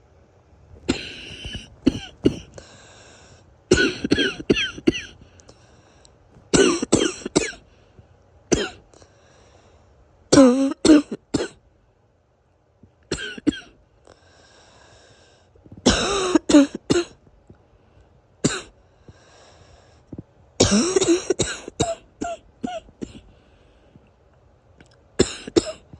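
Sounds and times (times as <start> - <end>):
person coughing: 0.8 - 2.8, 3.7 - 5.2, 6.5 - 7.6, 8.5 - 8.8, 10.4 - 11.6, 13.1 - 13.7, 15.8 - 17.2, 18.4 - 18.7, 20.6 - 23.3, 25.2 - 25.9.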